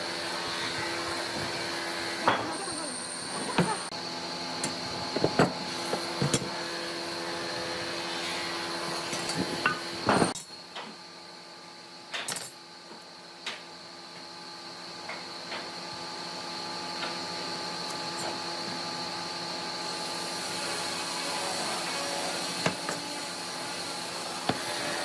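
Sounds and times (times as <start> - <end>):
tools and wood clattering: 2.2 - 3.9, 4.6 - 6.6.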